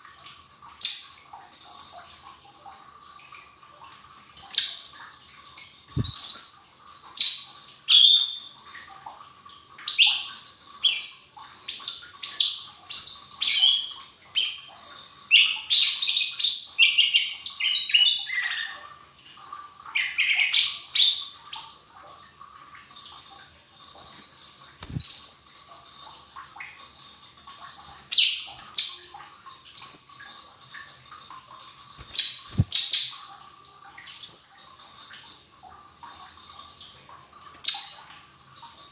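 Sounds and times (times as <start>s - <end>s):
bird chirping and whistling: 6.0s - 6.5s.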